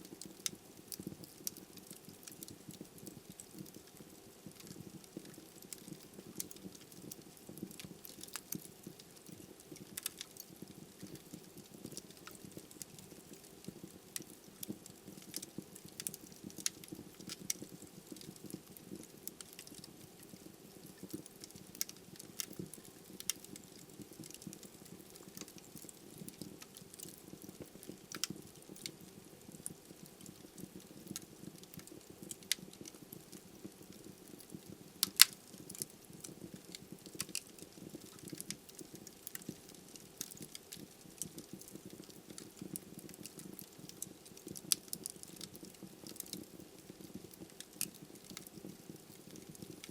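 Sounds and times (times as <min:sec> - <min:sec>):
burning logs crackling: 0:00.0 - 0:49.9.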